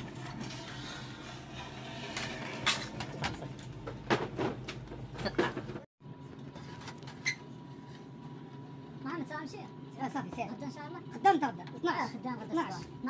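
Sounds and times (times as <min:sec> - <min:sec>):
steady background hum: 0:00.0 - 0:13.0
objects knocking and clattering: 0:02.2 - 0:05.9.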